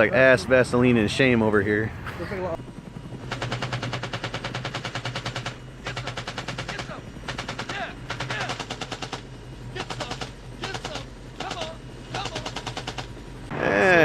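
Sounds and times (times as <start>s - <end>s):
airsoft guns firing full auto: 3.3s - 13.1s.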